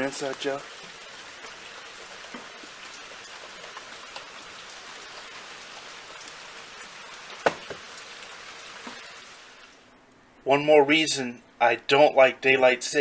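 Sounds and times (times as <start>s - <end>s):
rain pattering: 0.0s - 9.8s
sharp knocks: 7.4s - 7.8s.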